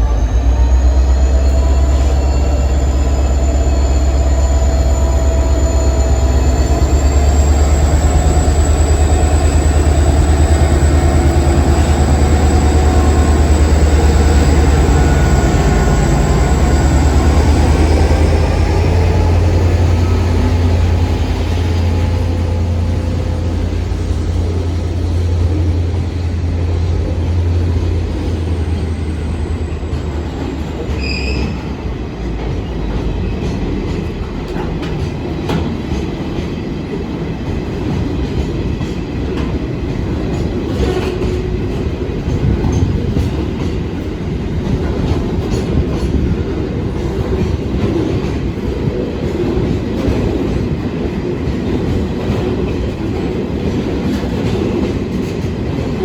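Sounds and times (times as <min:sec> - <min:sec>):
train wheels rumbling: 0:00.0 - 0:56.0
high wheel squeal: 0:00.1 - 0:31.8.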